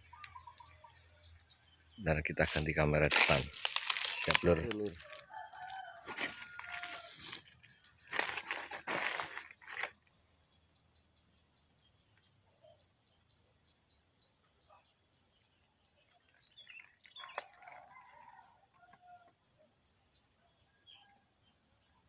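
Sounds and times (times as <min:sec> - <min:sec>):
small birds chirping: 0:00.0 - 0:22.0
rooster crowing: 0:04.3 - 0:07.3, 0:17.4 - 0:19.3.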